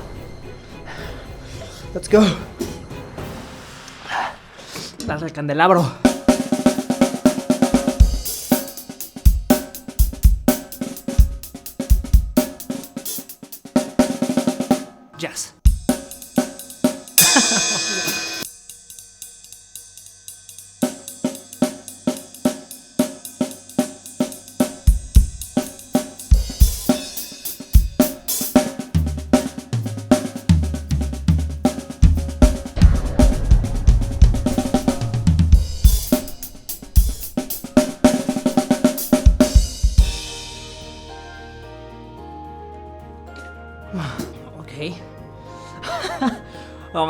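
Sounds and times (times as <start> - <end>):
drum kit rock groove: 6.0 - 14.9, 15.6 - 41.1
cymbal crash: 17.1 - 18.8, 32.4 - 41.3
low bass line: 32.8 - 36.7.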